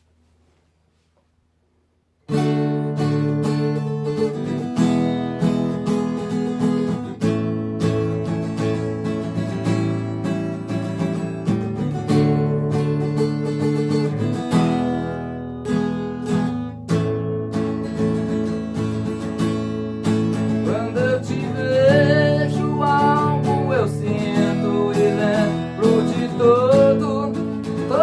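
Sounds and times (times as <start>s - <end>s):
acoustic guitar strumming chords: 2.3s - 28.0s
man singing: 20.5s - 28.0s.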